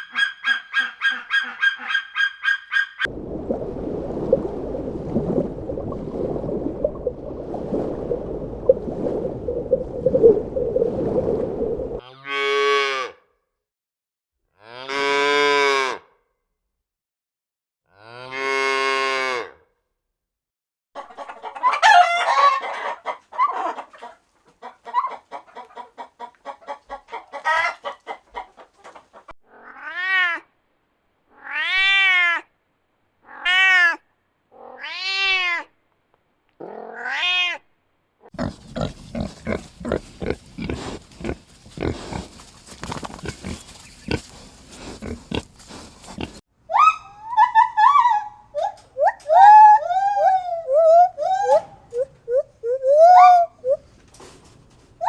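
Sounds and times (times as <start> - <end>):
farm animal calls: 0.0 - 3.1, 38.4 - 47.1
cat meowing: 36.9 - 37.6
rapid short animal sounds: 38.4 - 46.4.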